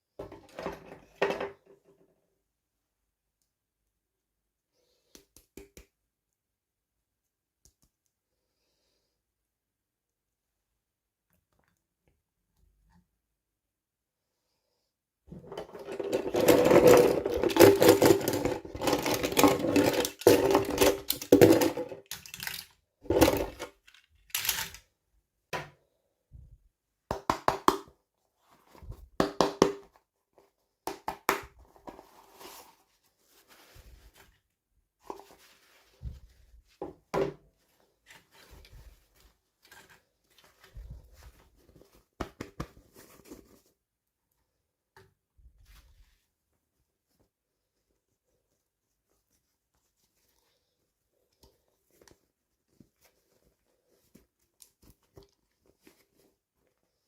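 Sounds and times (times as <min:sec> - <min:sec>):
plastic packaging rustling: 0:15.8 - 0:24.8
plastic clicks and crinkles: 0:17.0 - 0:24.9.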